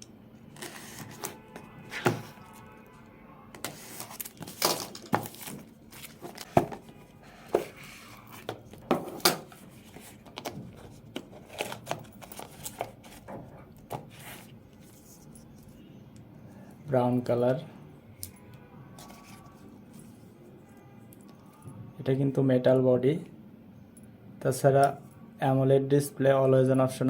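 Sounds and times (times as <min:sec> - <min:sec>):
packaging clicks and rustles: 0:00.6 - 0:02.5, 0:03.6 - 0:15.7.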